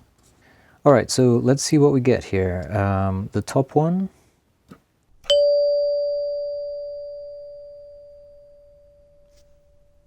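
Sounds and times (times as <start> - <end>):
door chime ringing: 5.3 - 10.0.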